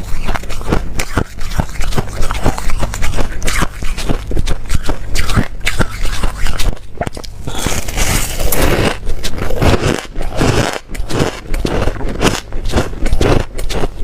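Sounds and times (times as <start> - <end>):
ice being chewed: 0.0 - 14.0
rough scraping sound: 7.4 - 13.3.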